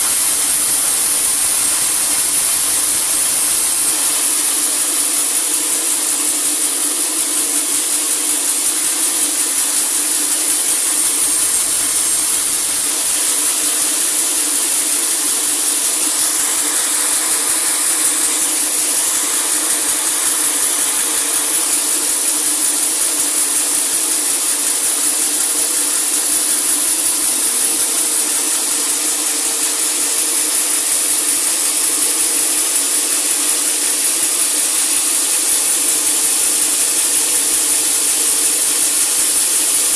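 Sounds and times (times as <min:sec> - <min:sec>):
constant hum: 0:00.0 - 0:27.5
saw cutting log: 0:00.0 - 0:39.9.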